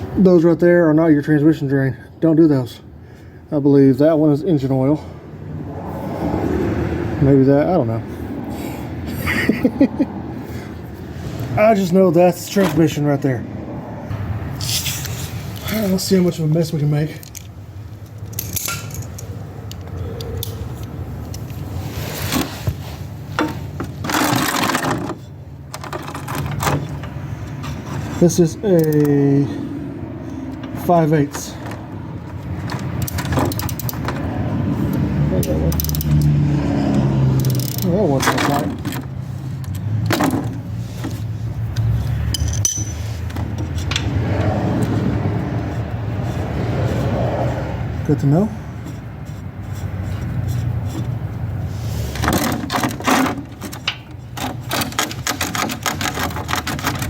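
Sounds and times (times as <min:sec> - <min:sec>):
wrench clinking and scraping metal: 0:14.6 - 0:22.7, 0:23.3 - 0:29.5, 0:30.3 - 0:36.3, 0:36.9 - 0:45.0, 0:48.7 - 0:57.0
metal hand tools clinking: 0:18.2 - 0:19.3, 0:42.2 - 0:43.2.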